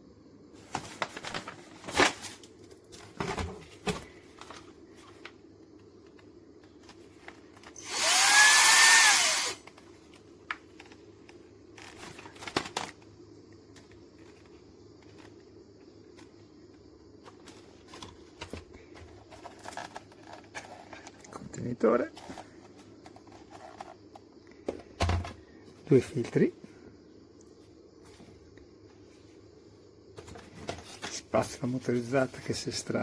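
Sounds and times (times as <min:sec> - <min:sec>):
vacuum cleaner motor whining: 0:07.7 - 0:09.7.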